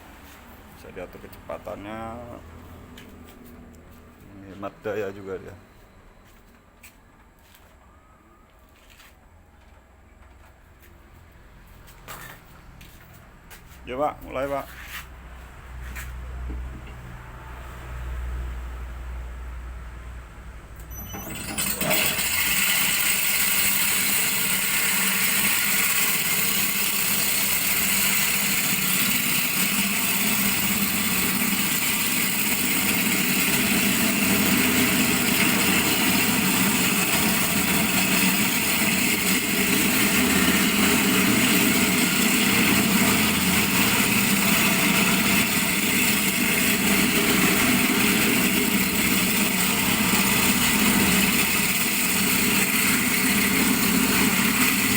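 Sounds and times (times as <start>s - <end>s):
grinding machine running: 20.9s - 54.9s.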